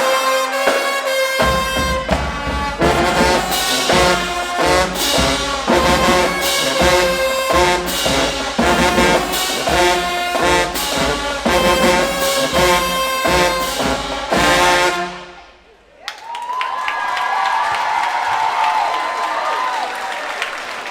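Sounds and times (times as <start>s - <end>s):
steady drum beat: 0.0s - 15.3s
marching band playing: 0.0s - 15.6s
trombones and trumpets: 0.0s - 15.7s.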